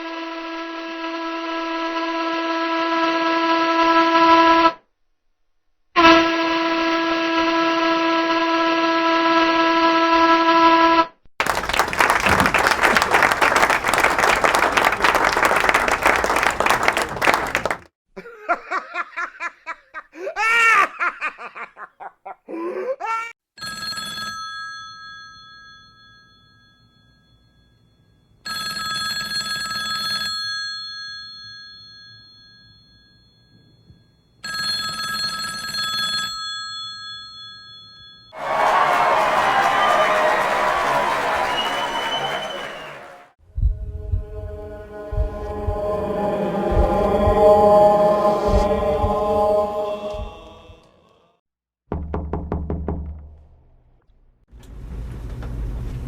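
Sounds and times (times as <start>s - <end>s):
telephone bell ringing: 23.6s - 38.4s
long horn blasts: 44.3s - 50.8s.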